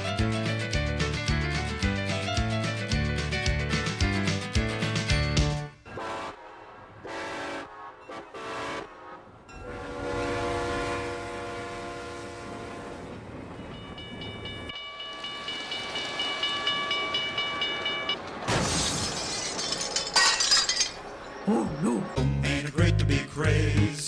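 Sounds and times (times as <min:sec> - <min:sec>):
model train horn: 0:05.9 - 0:13.2.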